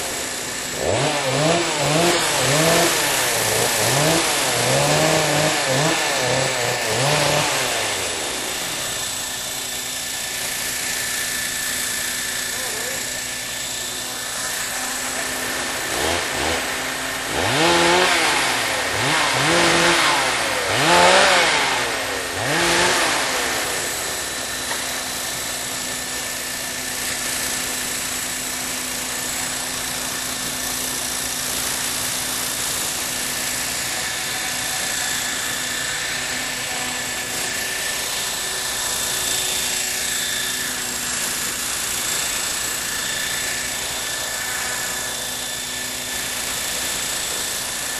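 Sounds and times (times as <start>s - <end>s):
model helicopter whine: 0.0s - 47.9s.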